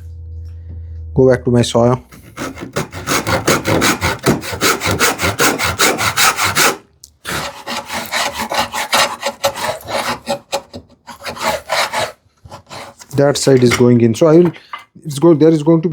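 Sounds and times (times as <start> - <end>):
handsaw cutting wood: 2.1 - 13.6.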